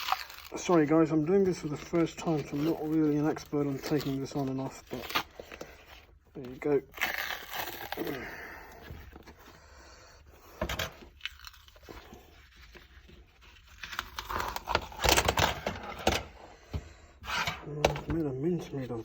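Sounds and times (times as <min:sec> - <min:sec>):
plastic cracking and snapping: 0:13.6 - 0:16.3.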